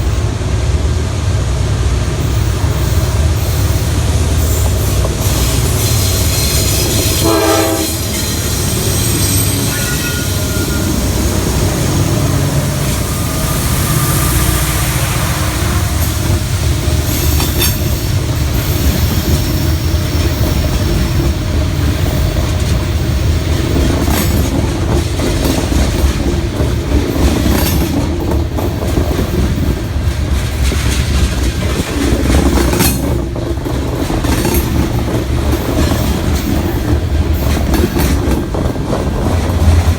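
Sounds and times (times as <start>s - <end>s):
freight train rumble: 0.0s - 39.9s
wheels clacking over rail joints: 2.4s - 13.2s, 15.6s - 39.9s
brief pitched squeal: 8.8s - 11.2s, 12.5s - 16.3s.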